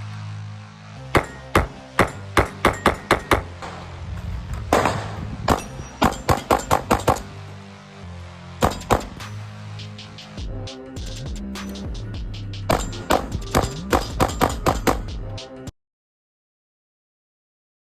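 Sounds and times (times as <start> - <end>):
background music with steady beat: 0.0 - 15.7
pistol shots: 1.2 - 7.6, 8.6 - 9.5, 12.7 - 15.1.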